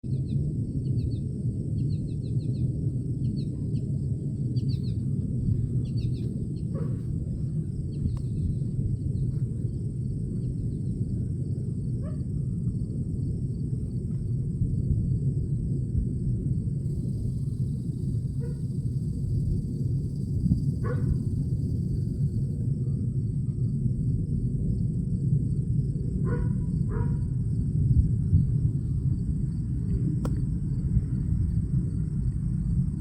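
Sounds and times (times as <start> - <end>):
deep rumble from the sky: 0.0 - 33.0
birds chirping: 0.1 - 11.2.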